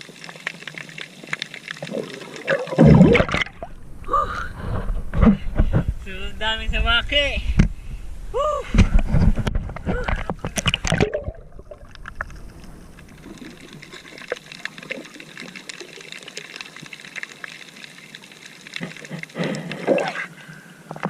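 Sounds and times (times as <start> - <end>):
water splashing: 0.0 - 4.2, 9.9 - 21.0
water drips: 10.5 - 20.2.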